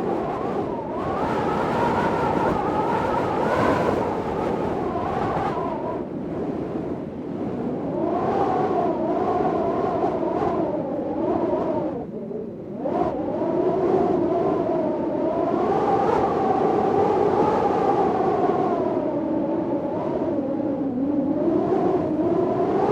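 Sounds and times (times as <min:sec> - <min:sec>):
storm wind howling: 0:00.0 - 0:22.9.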